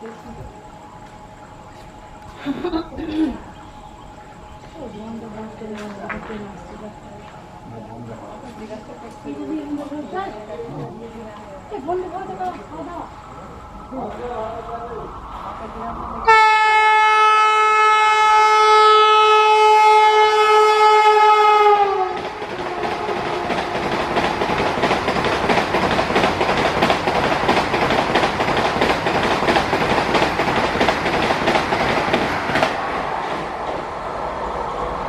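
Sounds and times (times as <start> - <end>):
train horn blast: 16.2 - 24.1
train wheels clattering over rail joints: 22.0 - 33.9.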